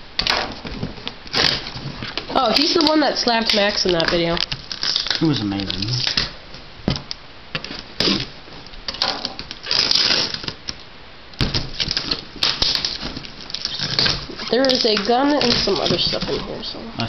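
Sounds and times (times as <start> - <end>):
packaging rustling: 0.6 - 6.4, 9.2 - 10.8, 11.4 - 16.7.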